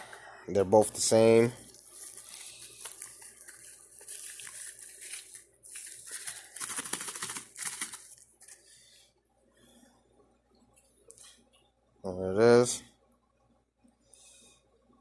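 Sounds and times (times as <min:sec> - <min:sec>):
packaging crinkling and tearing: 0:01.6 - 0:08.6.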